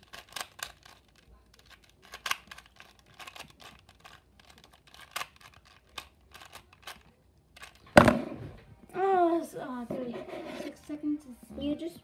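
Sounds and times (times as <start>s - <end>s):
puzzle cube twisting clicks: 0.0s - 7.8s.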